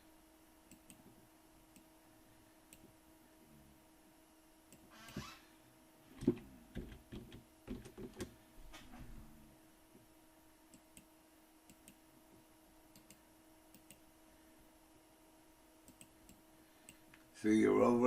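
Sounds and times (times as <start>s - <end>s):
low hum: 0.0s - 17.2s
computer mouse clicking: 0.7s - 1.0s, 11.7s - 12.0s, 12.9s - 14.0s, 15.8s - 17.0s.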